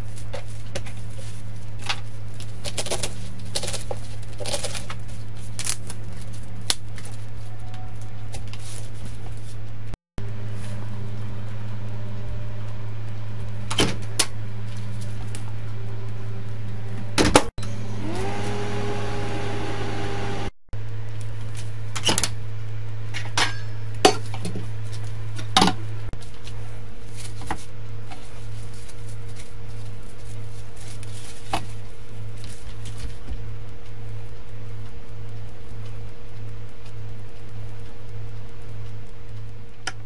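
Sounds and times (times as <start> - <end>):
microwave oven humming: 0.0 - 40.0.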